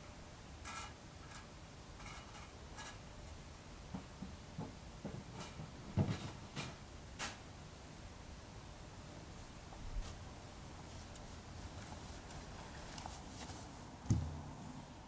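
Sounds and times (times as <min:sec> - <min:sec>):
soft knocks: 0:14.1 - 0:14.5.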